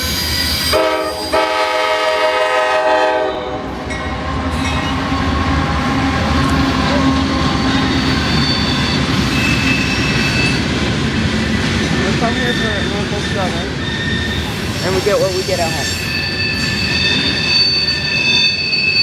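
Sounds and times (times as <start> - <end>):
freight train rumbling past: 0.0 - 19.0
locomotive horn blasts: 0.7 - 3.6
faint wheel squeal: 7.7 - 10.7, 12.4 - 19.0.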